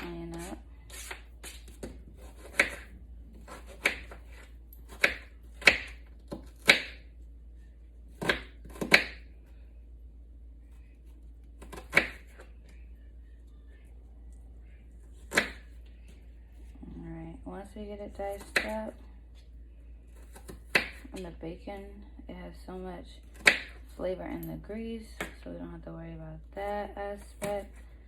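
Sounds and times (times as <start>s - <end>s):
knife chopping on cutting board: 0.0s - 7.0s, 8.2s - 9.2s, 11.6s - 12.4s, 15.3s - 15.7s, 18.4s - 18.8s, 20.2s - 21.1s.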